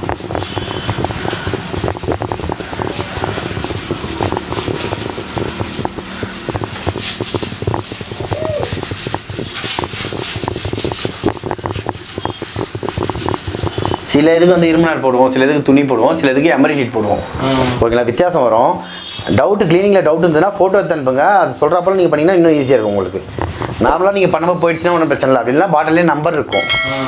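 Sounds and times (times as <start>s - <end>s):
scrubbing strokes on a surface: 0.0s - 14.3s, 20.2s - 25.4s.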